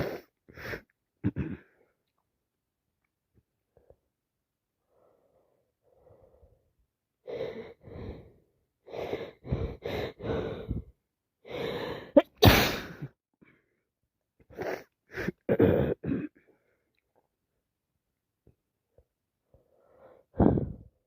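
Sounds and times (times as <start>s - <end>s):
person gasping breaths: 7.2s - 12.2s, 19.5s - 21.0s
person sneezing: 12.2s - 13.1s.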